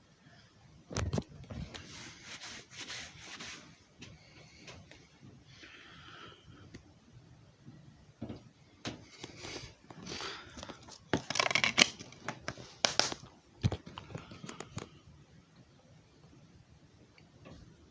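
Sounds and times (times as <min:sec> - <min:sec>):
crinkling and rustling: 0:08.2 - 0:15.0.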